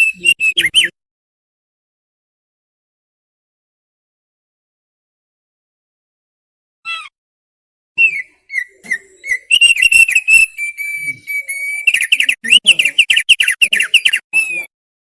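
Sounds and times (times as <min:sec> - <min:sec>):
bird singing whistled notes: 0:00.0 - 0:00.9, 0:08.0 - 0:14.7.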